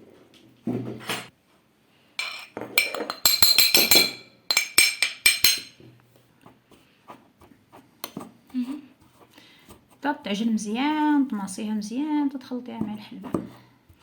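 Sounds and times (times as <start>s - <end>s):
utensil clinking against bowl: 2.2s - 5.8s.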